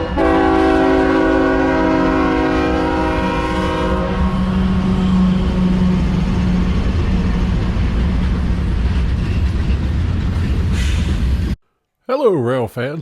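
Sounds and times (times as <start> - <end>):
locomotive air horn: 0.0 - 6.0
train rumbling: 0.0 - 11.6.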